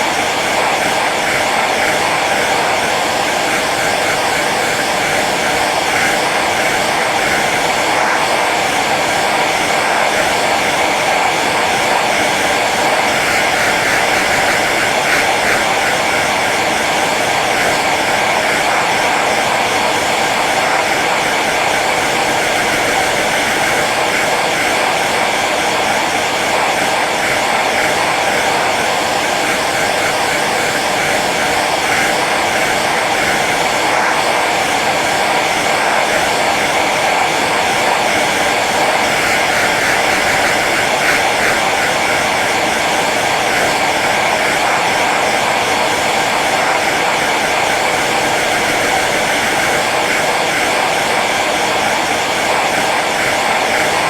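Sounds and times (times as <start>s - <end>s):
hair dryer running: 0.0s - 54.0s.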